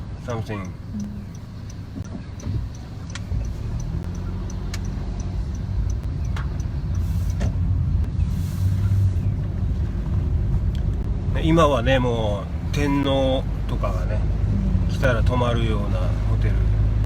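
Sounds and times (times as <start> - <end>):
engine and road rumble: 0.0 - 17.0
faint high ticking: 0.4 - 7.4
sharp clicks: 0.6 - 7.5.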